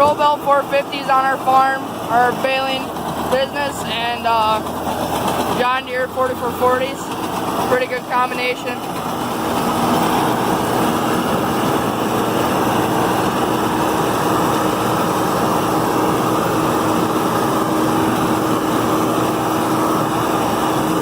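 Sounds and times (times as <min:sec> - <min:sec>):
round baler working: 0:00.0 - 0:21.0
tractor diesel engine running: 0:00.0 - 0:21.0.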